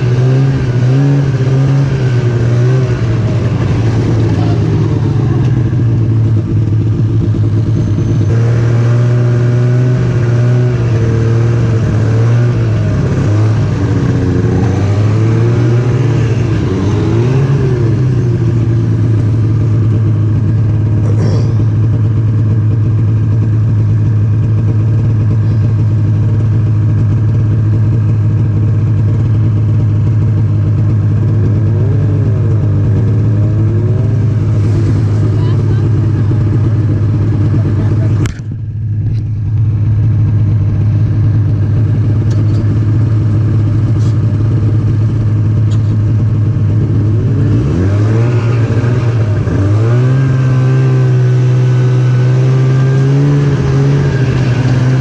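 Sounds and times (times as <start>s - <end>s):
snowmobile engine running: 0.0s - 55.0s.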